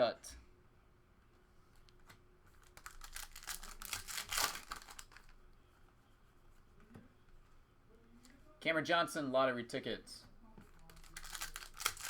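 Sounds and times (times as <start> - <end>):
trading cards crackling: 2.5 - 5.4, 10.7 - 12.0.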